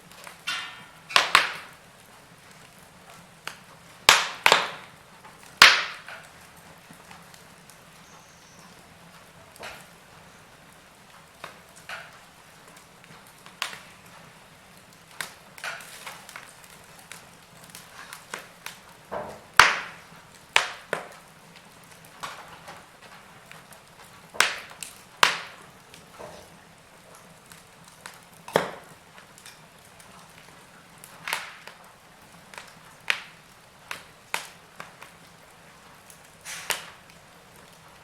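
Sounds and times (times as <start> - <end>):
wood fire crackling: 0.0 - 38.0.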